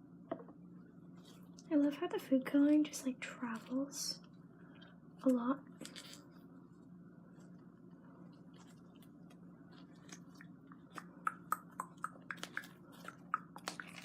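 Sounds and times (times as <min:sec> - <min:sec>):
faint steady hum: 0:00.0 - 0:14.0
slime crackling and popping: 0:08.6 - 0:14.0.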